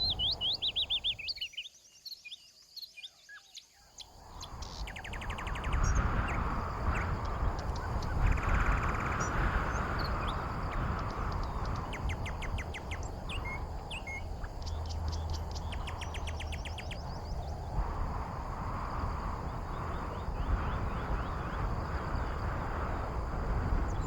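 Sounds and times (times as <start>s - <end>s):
bird trills: 0.0s - 1.6s
outdoor background hiss: 0.0s - 2.9s, 3.8s - 24.0s
small birds chirping: 0.0s - 24.0s.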